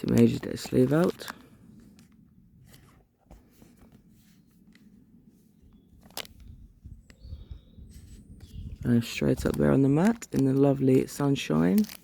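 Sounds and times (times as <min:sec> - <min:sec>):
card sleeve rustling: 0:00.0 - 0:04.9, 0:06.0 - 0:06.5, 0:09.0 - 0:12.0.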